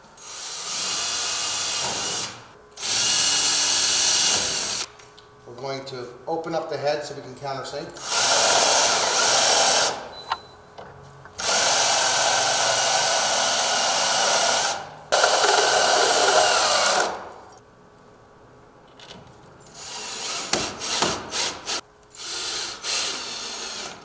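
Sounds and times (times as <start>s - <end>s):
power drill running: 0.2s - 4.9s, 8.0s - 10.1s, 11.4s - 17.4s, 19.8s - 24.0s.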